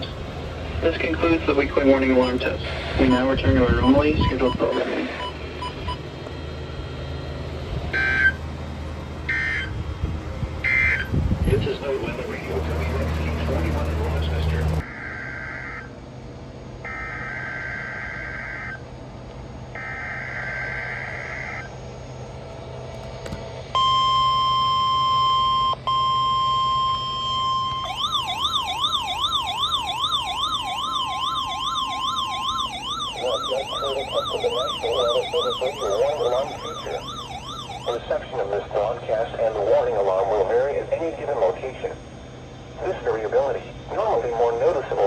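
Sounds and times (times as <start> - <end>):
electronic siren tone: 0.0 - 45.0
steady warning alarm tone: 0.0 - 45.0
warbling two-tone digital burst: 0.8 - 6.0, 33.2 - 38.0.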